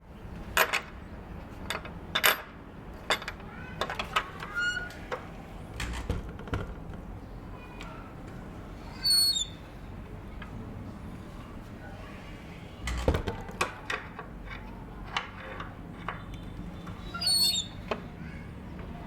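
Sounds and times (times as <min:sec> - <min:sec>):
door squeaking: 0:04.4 - 0:05.1, 0:08.9 - 0:09.7, 0:17.0 - 0:17.9
door latch clicking and rattling: 0:12.8 - 0:14.0.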